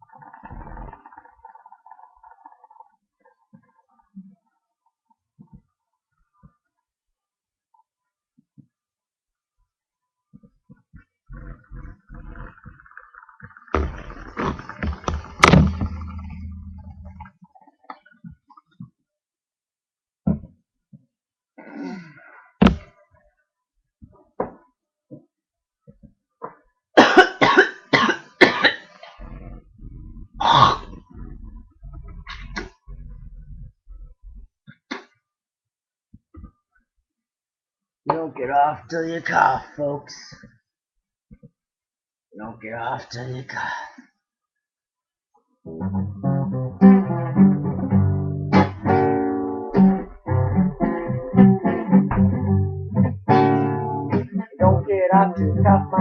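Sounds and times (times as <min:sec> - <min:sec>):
throat noises: 0:00.0 - 0:04.5, 0:10.4 - 0:17.6, 0:28.8 - 0:35.1
guitar playing: 0:15.4 - 0:17.3, 0:45.7 - 0:56.0
man coughing: 0:27.0 - 0:28.9.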